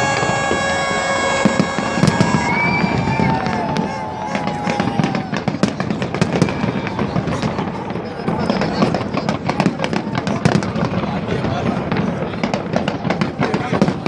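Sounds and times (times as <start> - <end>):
firework whistling glide: 0.0 - 7.6
fireworks bangs and pops: 0.0 - 14.0.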